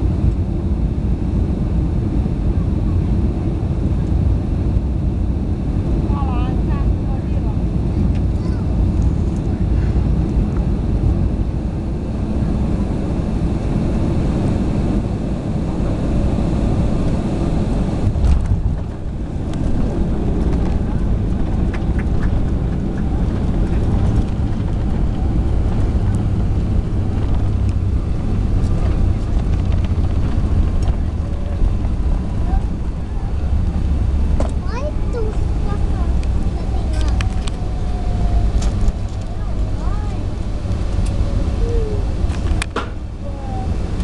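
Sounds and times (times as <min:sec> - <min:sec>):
jet airliner rumble: 0:00.0 - 0:44.0
wheels rolling on runway: 0:12.1 - 0:44.0.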